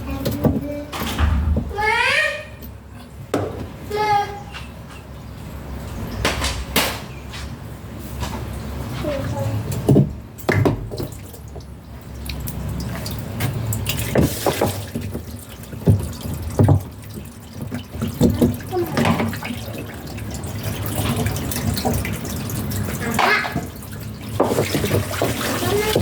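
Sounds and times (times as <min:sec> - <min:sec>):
water running and splashing: 0:08.4 - 0:26.0
knocks and clatters: 0:23.1 - 0:26.0.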